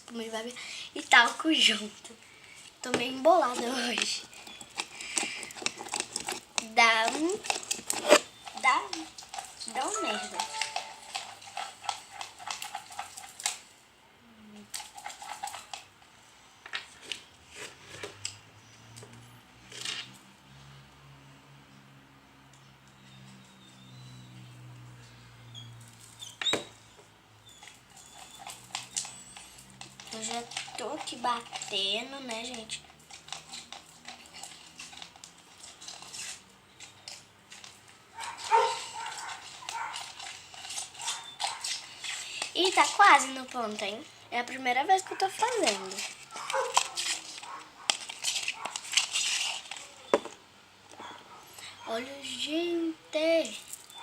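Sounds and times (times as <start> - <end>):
spoon stirring slime: 2.8 - 13.6, 27.6 - 50.0
spoon clicking and scraping pot: 3.6 - 13.6, 27.6 - 43.9
dog barking: 38.2 - 40.1, 41.0 - 41.8, 45.0 - 47.9, 51.0 - 52.0.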